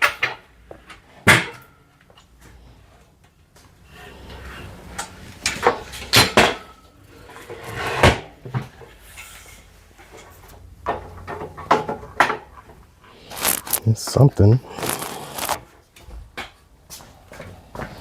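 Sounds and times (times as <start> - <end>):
furniture scraping: 13.3 - 13.9, 14.6 - 15.6.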